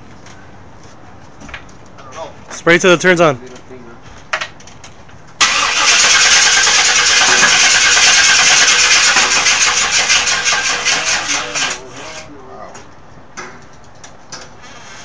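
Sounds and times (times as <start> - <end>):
engine cranking by starter: 5.4 - 12.2.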